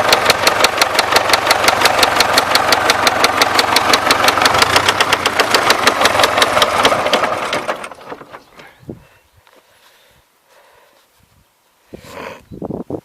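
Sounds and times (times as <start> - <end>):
knocking diesel engine: 0.0 - 8.6.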